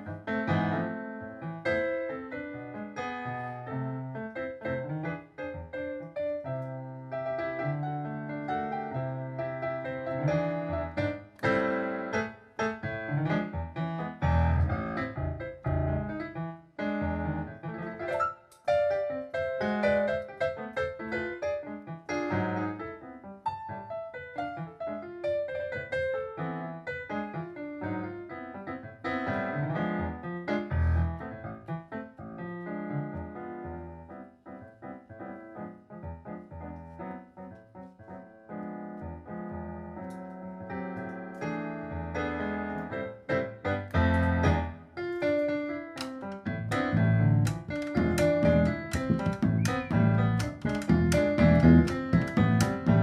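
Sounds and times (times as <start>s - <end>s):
acoustic piano jazz chords: 0.0s - 53.0s
low bass notes: 46.5s - 53.0s.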